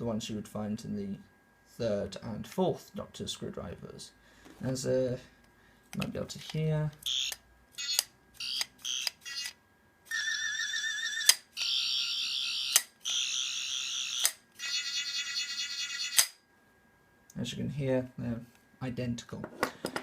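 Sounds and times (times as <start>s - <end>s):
toy electronic chirps: 7.1s - 9.5s, 10.1s - 16.2s.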